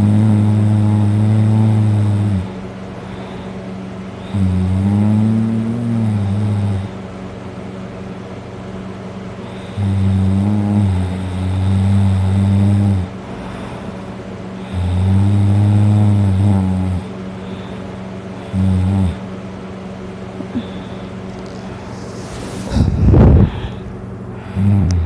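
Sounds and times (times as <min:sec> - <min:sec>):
man snoring loudly: 0:00.0 - 0:03.5, 0:04.2 - 0:07.0, 0:09.4 - 0:13.6, 0:14.6 - 0:17.8, 0:18.4 - 0:19.3, 0:24.4 - 0:25.0
steady hiss: 0:20.4 - 0:25.0.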